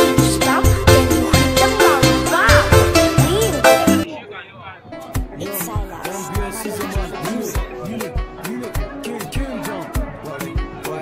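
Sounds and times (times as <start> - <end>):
bending bass notes: 0.0 - 4.1
kick-drum beat: 0.1 - 4.0, 5.2 - 11.0.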